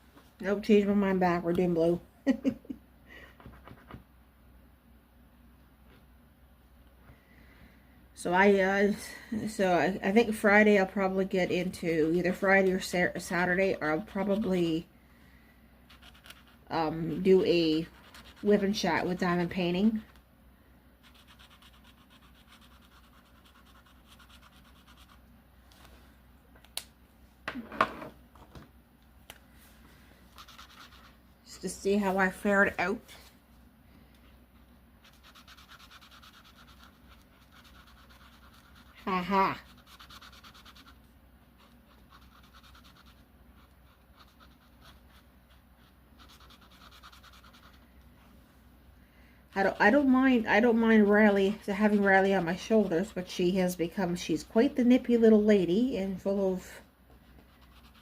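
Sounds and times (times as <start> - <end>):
marker scratching on paper: 15.9 - 16.6, 17.8 - 19.3, 21.0 - 25.2, 30.3 - 31.0, 35.0 - 41.0, 41.6 - 47.8, 57.5 - 58.0.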